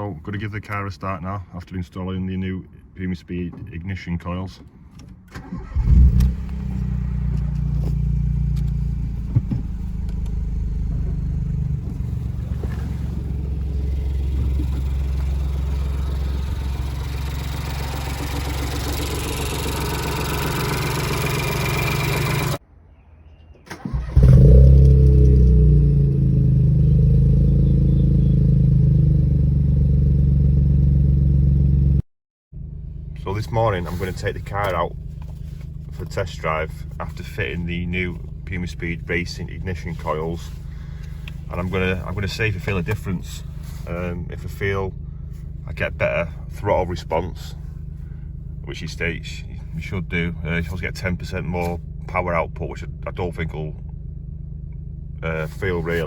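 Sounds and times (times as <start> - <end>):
car engine idling: 5.4 - 22.6, 32.6 - 56.0.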